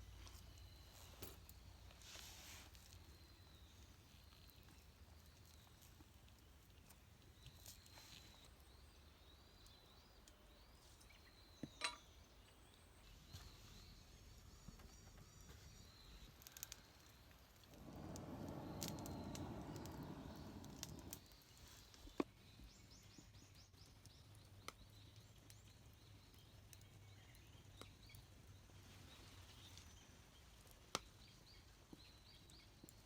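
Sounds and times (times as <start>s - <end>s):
birds chirping faintly: 0.0s - 33.0s
wood fire crackling pops: 16.4s - 21.4s
rough rushing noise: 17.7s - 21.2s.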